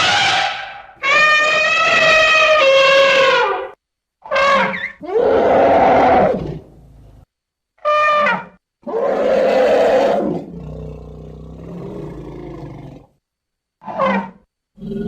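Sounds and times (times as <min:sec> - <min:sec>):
elephant trumpeting: 0:00.0 - 0:06.7, 0:07.8 - 0:10.4, 0:13.8 - 0:14.4.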